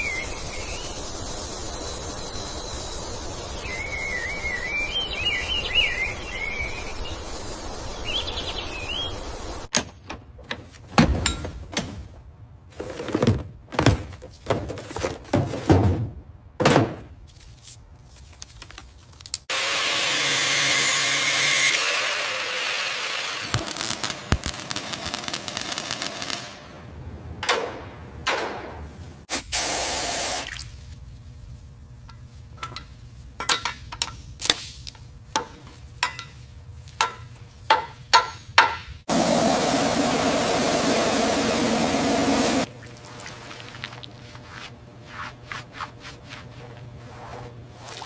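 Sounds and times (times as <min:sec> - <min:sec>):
birds chirping: 0:00.0 - 0:09.7
loud steady hissing: 0:39.1 - 0:42.7.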